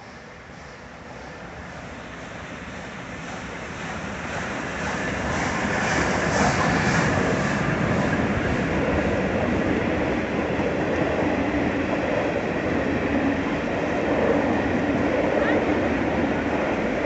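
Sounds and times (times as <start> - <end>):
steam train rumbling: 0.0 - 17.0.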